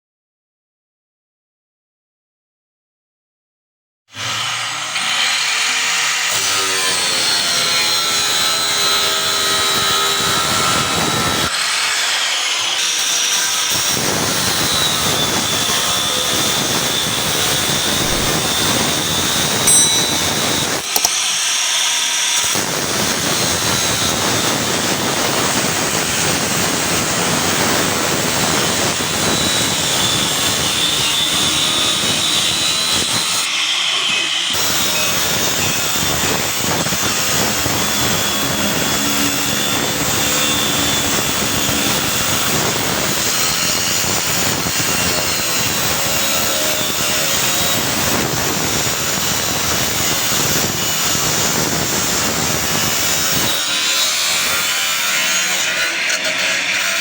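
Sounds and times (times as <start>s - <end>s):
angle grinder cutting steel: 4.2s - 57.0s
sharp click: 19.7s - 21.2s.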